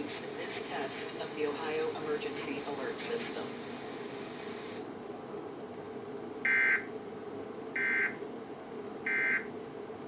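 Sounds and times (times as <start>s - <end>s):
faint high whine: 0.0s - 10.0s
steady hum: 0.0s - 10.0s.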